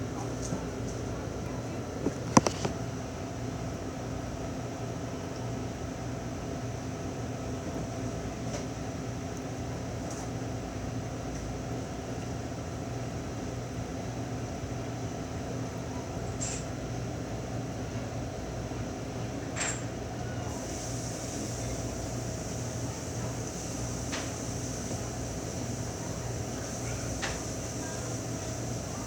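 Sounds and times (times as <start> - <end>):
steady mechanical hum: 0.0 - 29.0
faint clicks: 20.7 - 29.0.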